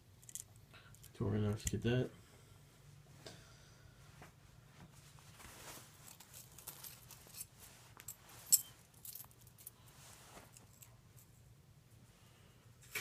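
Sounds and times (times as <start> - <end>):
small items clicking and rattling: 0.2 - 1.1, 6.1 - 7.5.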